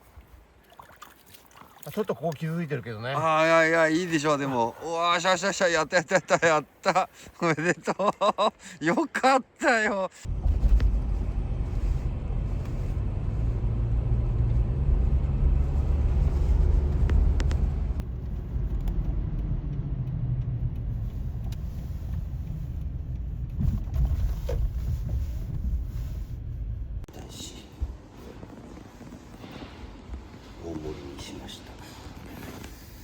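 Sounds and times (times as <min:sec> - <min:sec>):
low rumble: 0:10.3 - 0:27.1.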